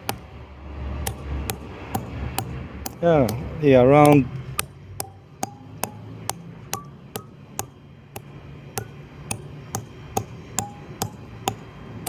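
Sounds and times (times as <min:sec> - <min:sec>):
hammer striking steel anchors: 0:00.0 - 0:00.3, 0:01.0 - 0:11.8.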